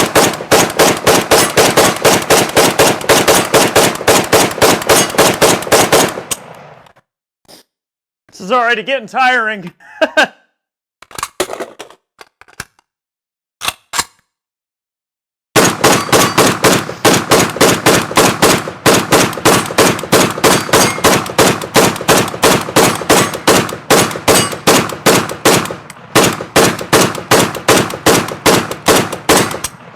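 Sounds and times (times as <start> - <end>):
automatic rifle fire: 0.0 - 6.5, 15.6 - 29.9.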